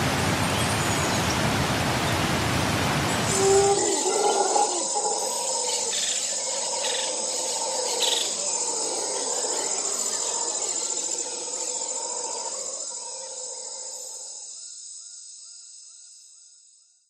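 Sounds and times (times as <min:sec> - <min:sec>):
insects chorus: 0:00.0 - 0:17.0
sharp animal calls: 0:03.3 - 0:09.9.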